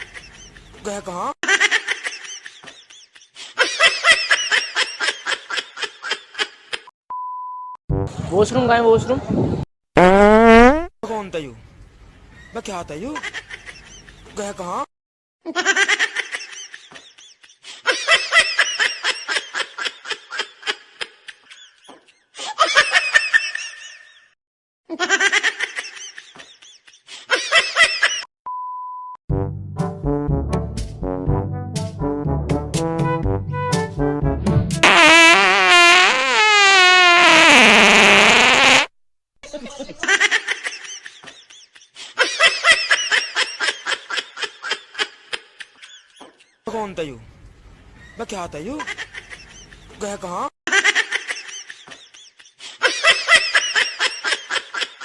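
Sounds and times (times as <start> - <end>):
brass music: 7.9 - 9.6, 29.3 - 36.5
high-pitched laughter: 15.5 - 24.3, 24.9 - 28.3.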